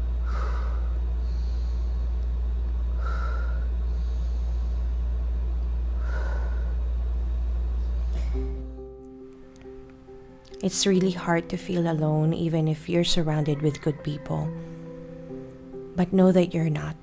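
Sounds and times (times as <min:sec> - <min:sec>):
loud steady low rumble: 0:00.0 - 0:08.6
woman breathing deeply: 0:00.0 - 0:08.6, 0:13.4 - 0:16.0.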